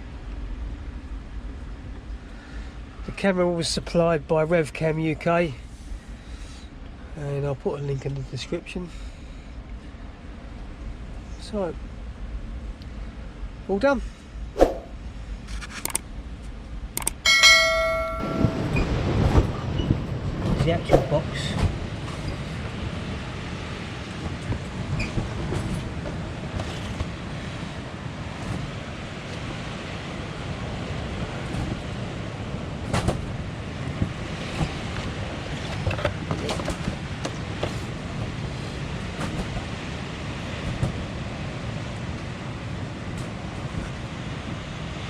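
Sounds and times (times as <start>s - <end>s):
sharp clicks: 15.6s - 16.1s, 16.9s - 17.2s
wind buffeting microphone: 16.8s - 45.0s
clicks: 17.0s - 17.2s
bell-like ding: 17.2s - 18.9s.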